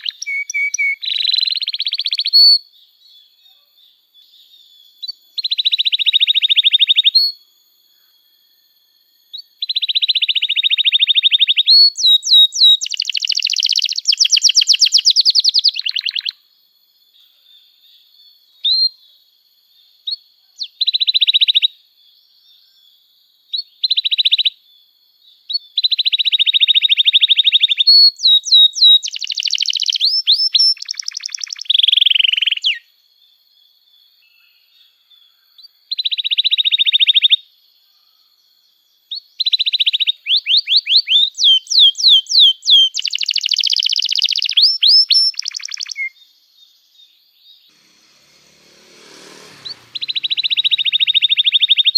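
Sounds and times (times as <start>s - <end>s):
canary singing: 0.0s - 2.6s, 9.3s - 16.4s, 25.8s - 32.9s, 39.1s - 46.1s, 47.7s - 51.9s.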